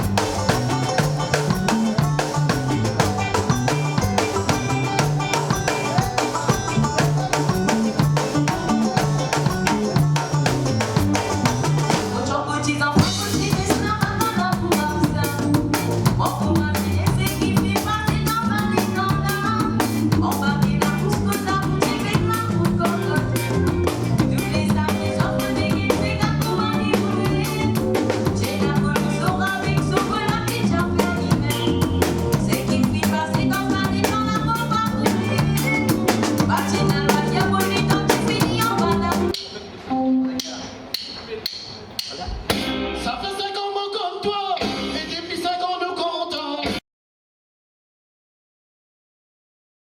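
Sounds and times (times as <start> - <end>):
drum kit beat: 0.0 - 12.3, 13.0 - 43.0
melody over band: 0.0 - 12.3, 13.0 - 40.9
bass guitar: 0.0 - 40.3, 42.1 - 43.5, 44.6 - 45.4.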